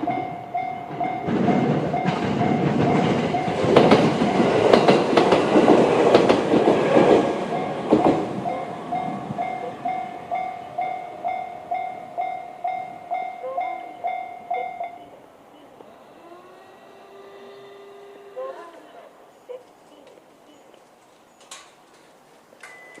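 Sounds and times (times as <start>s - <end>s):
level crossing alarm ringing: 0.0s - 5.8s, 7.0s - 20.7s, 22.6s - 23.0s
train wheels clicking over rail joints: 0.0s - 18.4s, 21.0s - 23.0s
electric train passing: 0.0s - 23.0s.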